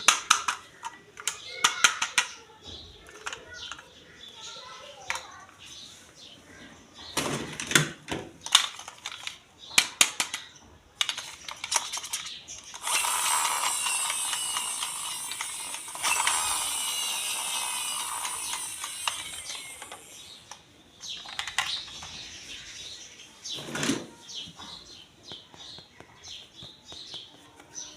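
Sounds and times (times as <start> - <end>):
plastic toy parts clicking: 0.0 - 5.6, 7.4 - 22.4
rapid ratcheting scrape: 11.1 - 20.6.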